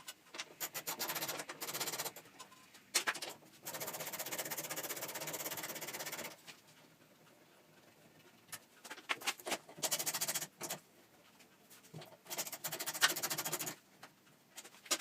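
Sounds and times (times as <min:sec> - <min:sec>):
ratchet wrench clicking: 0:12.3 - 0:13.8.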